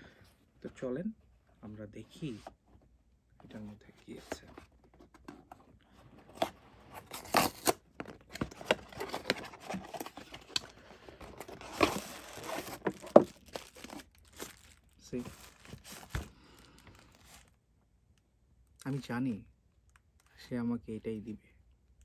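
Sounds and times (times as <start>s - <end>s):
box and packaging tearing: 6.3s - 16.2s.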